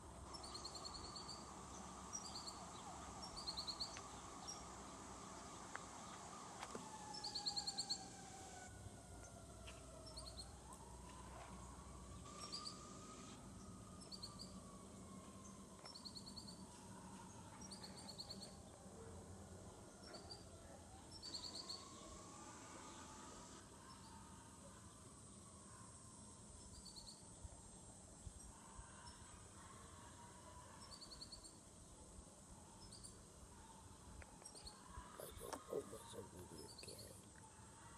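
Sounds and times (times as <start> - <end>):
distant fire truck siren wailing: 6.1 - 15.9.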